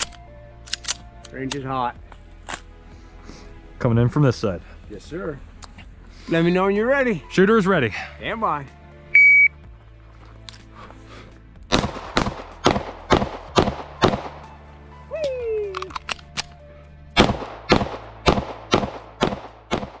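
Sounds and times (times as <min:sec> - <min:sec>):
pistol shots: 0:11.7 - 0:14.4, 0:17.2 - 0:20.0.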